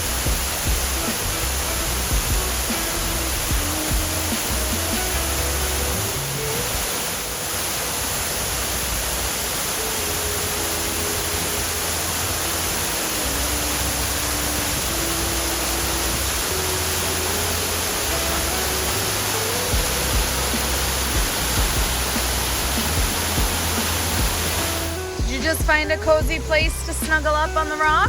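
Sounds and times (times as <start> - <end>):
waterfall rushing: 0.0 - 27.8
soft background music: 0.0 - 28.0.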